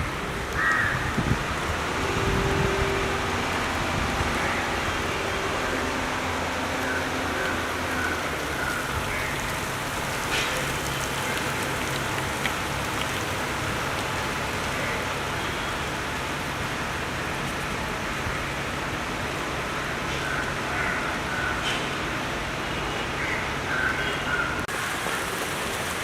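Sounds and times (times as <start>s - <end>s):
steady rain falling: 0.0s - 26.0s
low steady hum: 1.6s - 10.2s.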